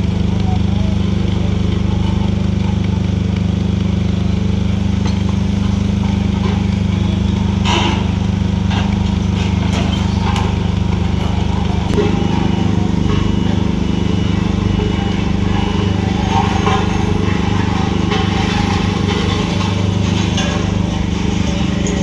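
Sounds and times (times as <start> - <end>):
diesel excavator engine running: 0.0 - 22.0
excavator scrape: 4.0 - 22.0.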